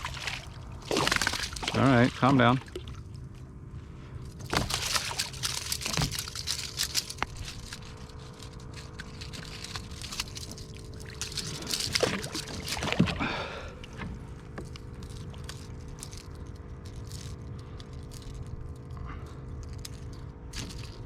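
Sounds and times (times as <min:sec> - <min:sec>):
water splashing and trickling: 0:00.0 - 0:03.4, 0:04.4 - 0:16.3.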